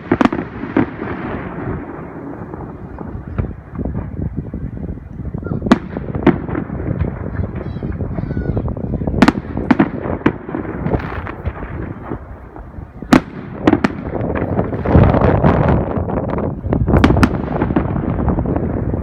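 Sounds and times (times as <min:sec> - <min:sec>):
firework shells bursting: 0:00.0 - 0:19.0
fireworks rumble and crackle: 0:00.0 - 0:19.0.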